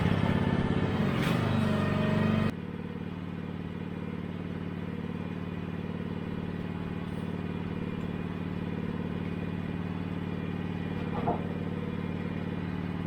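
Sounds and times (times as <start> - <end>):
sawmill engine running: 0.0 - 13.0.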